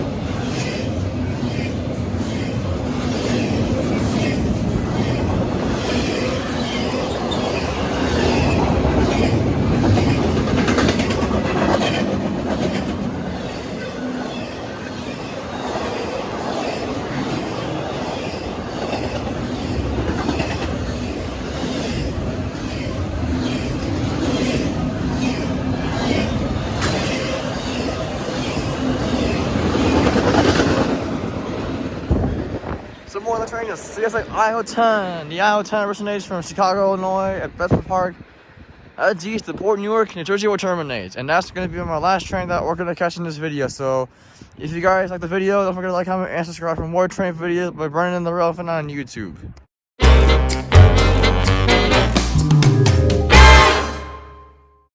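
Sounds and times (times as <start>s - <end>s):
freight train rumbling past: 0.0s - 39.1s, 50.0s - 54.6s.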